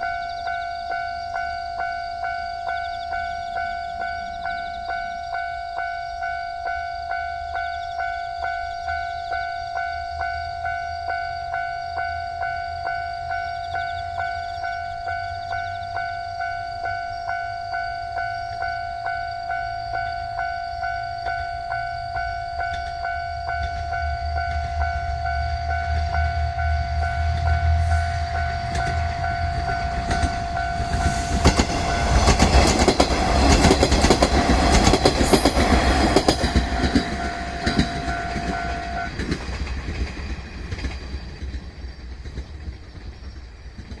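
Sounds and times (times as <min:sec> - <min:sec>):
level crossing warning bell: 0:00.0 - 0:39.5
diesel railcar engine rumble: 0:00.0 - 0:44.0
train wheels clattering over rails: 0:22.7 - 0:44.0.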